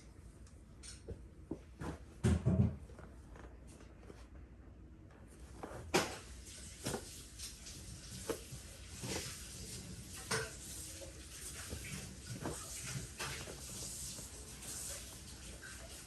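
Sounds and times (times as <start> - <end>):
clothing rustle: 2.8 - 16.0
body thumping on floor: 6.8 - 7.1.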